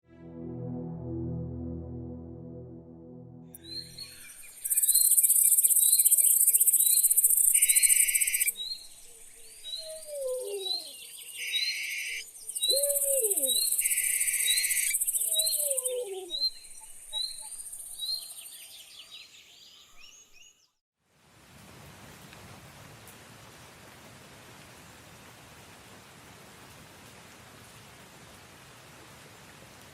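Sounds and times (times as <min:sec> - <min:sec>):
bird chirping: 0:03.6 - 0:20.7
insect trills: 0:04.0 - 0:09.2, 0:11.4 - 0:15.7
low hooting calls: 0:09.8 - 0:16.4
soft rain hiss: 0:21.0 - 0:29.9.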